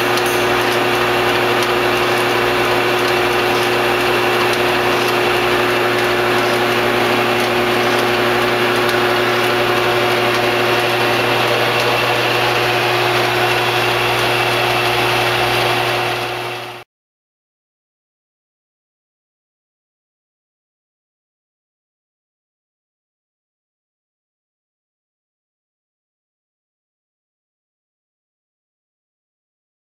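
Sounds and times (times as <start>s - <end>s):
surface grinder humming and whining: 0.0s - 16.8s.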